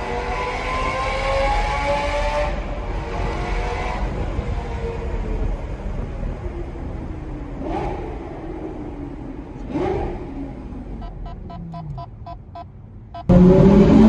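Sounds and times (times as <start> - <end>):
sports car engine revving: 0.0 - 5.5, 7.4 - 12.5, 13.2 - 14.0
electronic beeps: 11.0 - 13.3.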